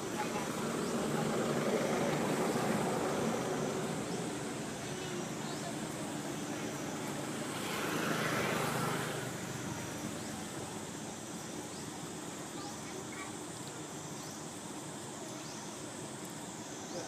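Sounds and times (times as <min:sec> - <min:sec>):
passing road traffic: 0:00.0 - 0:15.2.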